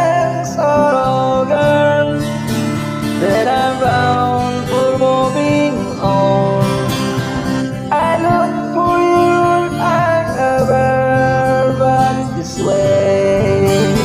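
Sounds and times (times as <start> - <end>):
acoustic guitar: 0.0 - 14.0
person singing: 0.0 - 14.0.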